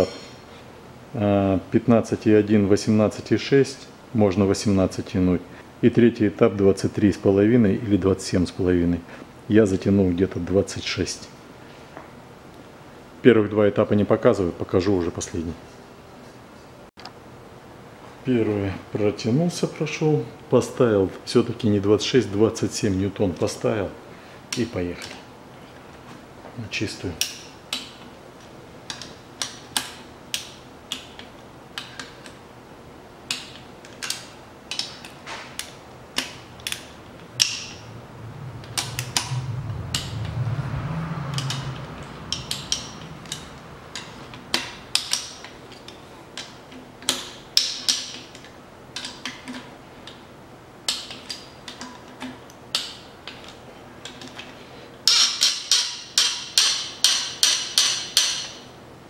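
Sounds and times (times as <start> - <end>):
low hum: 36.5 - 45.0.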